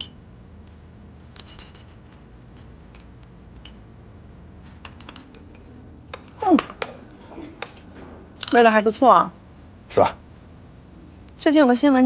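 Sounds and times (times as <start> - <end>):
low room hum: 0.0 - 12.0
tableware clinking: 1.4 - 2.3, 4.9 - 9.0.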